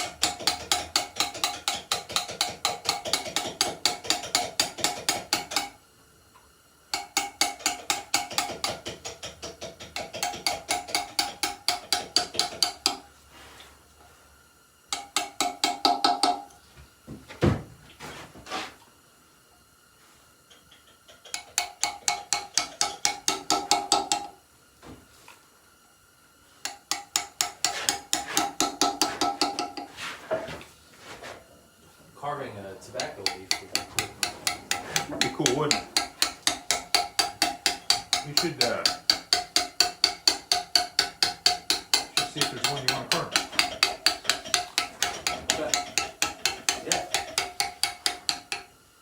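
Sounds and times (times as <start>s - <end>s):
hammer tapping chisel into stone: 0.0s - 5.7s, 7.0s - 13.0s, 14.9s - 16.5s, 21.3s - 24.3s, 26.7s - 29.9s, 33.0s - 48.7s.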